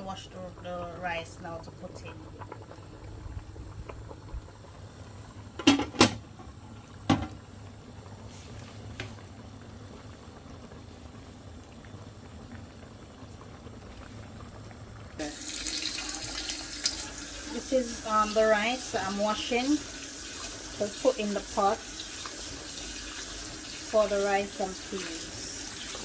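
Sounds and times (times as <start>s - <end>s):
tap water running into sink: 15.2s - 26.0s.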